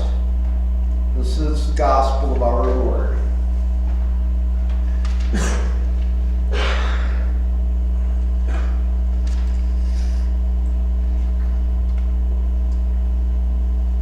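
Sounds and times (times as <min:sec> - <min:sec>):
low electrical hum: 0:00.0 - 0:14.0.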